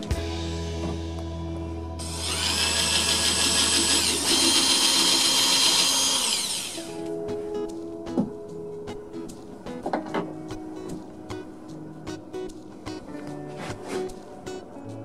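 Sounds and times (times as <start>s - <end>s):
background music: 0.0s - 15.0s
power tool motor whine: 2.0s - 7.1s.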